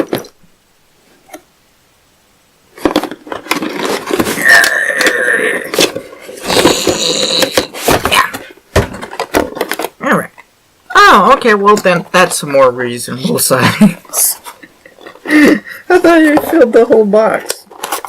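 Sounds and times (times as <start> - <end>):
cardboard box packaging rustling: 2.7 - 10.0, 15.9 - 18.0.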